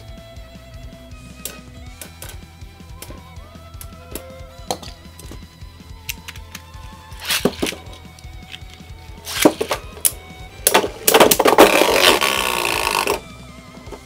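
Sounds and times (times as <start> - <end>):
spinning tops clashing: 6.1 - 13.2.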